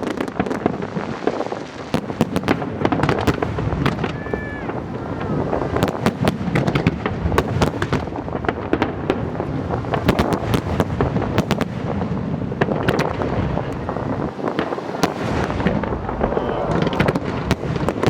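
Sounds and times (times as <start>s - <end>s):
fireworks cracks and bangs: 0.0s - 18.0s
low rumble of booms: 10.8s - 18.0s.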